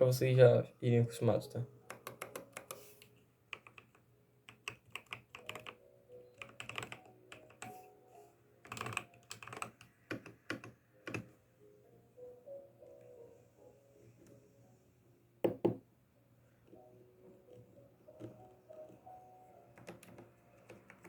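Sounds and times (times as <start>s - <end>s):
mechanical keyboard key clicks: 1.9s - 2.8s, 3.6s - 5.8s, 6.4s - 7.7s, 8.6s - 11.3s, 19.8s - 21.0s.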